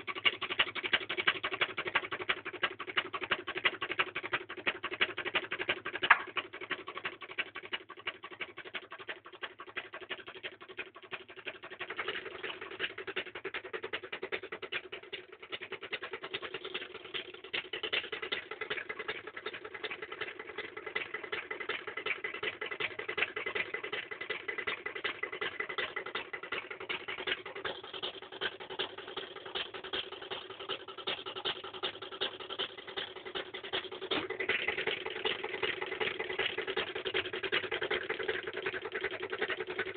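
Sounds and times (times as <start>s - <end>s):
rapid even clicking: 0.0s - 39.9s
motor hum: 15.4s - 39.9s.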